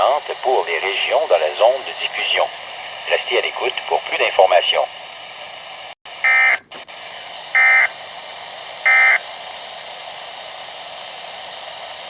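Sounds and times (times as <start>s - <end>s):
radio static hiss: 0.0s - 12.0s
digital data tone bursts: 6.2s - 6.6s, 7.6s - 7.9s, 8.9s - 9.2s.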